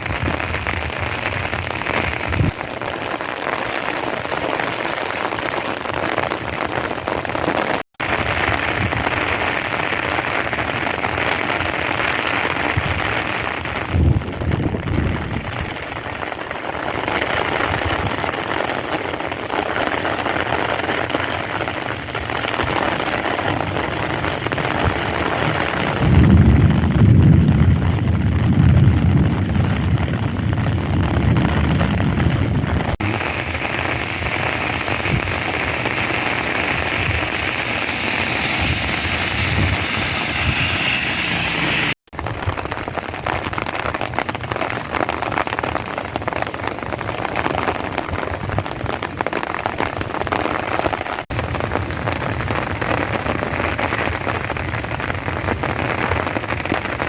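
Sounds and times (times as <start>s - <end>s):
heavy rain pouring: 0.0s - 57.0s
deep rumble: 25.9s - 42.0s.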